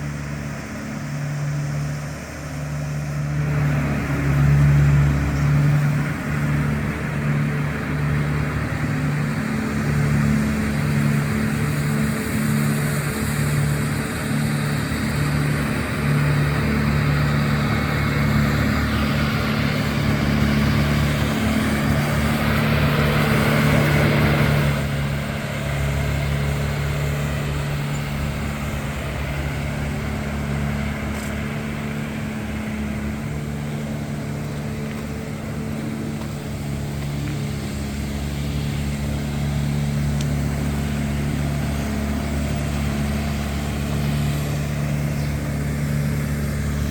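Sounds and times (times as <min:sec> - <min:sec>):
vehicle engine running: 0:00.0 - 0:46.9.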